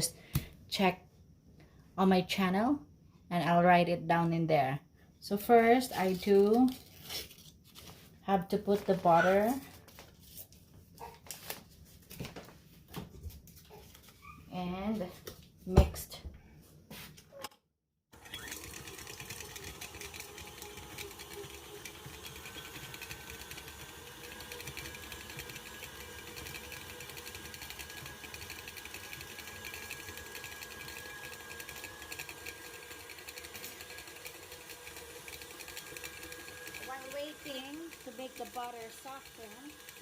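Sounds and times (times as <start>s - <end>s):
electric hand mixer running: 18.1s - 40.0s.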